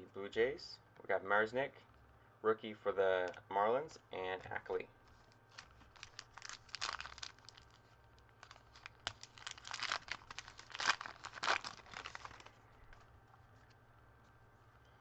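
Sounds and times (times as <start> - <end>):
foil wrapper crinkling and tearing: 5.2 - 13.0.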